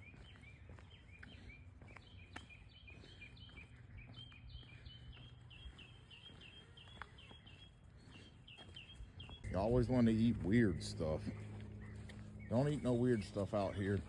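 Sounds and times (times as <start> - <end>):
faint bird chirping: 0.0 - 14.0
low outdoor rumble: 9.3 - 14.0.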